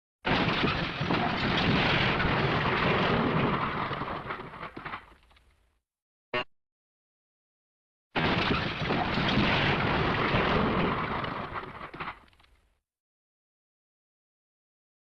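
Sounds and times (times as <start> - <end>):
loud crash with rumbling clatter: 0.3 - 5.1, 8.2 - 12.4.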